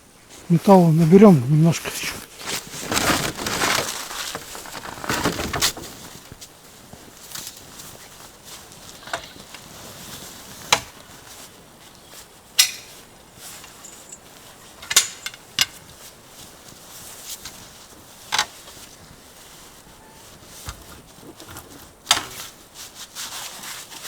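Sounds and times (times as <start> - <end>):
scrap metal clinking and knocking: 13.6 - 15.8.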